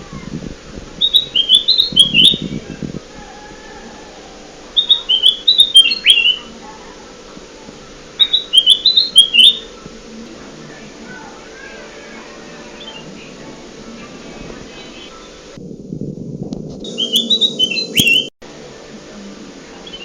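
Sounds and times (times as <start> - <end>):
bird song chirpy notes: 1.0 - 2.8, 4.7 - 6.6, 7.8 - 9.8, 11.1 - 13.5, 14.7 - 15.6, 16.9 - 18.3.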